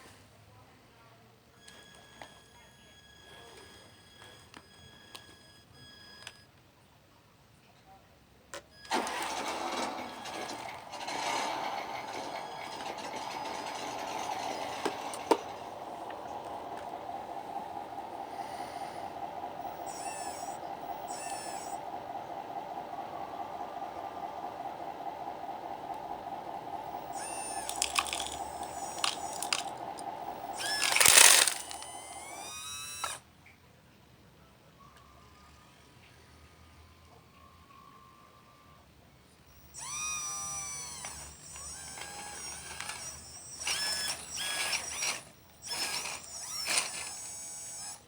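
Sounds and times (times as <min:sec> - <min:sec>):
short high squeaks: 0:01.6 - 0:06.5, 0:08.7 - 0:22.8, 0:26.3 - 0:33.2, 0:39.5 - 0:48.0
hydraulic pump humming: 0:08.6 - 0:33.2, 0:39.5 - 0:48.0.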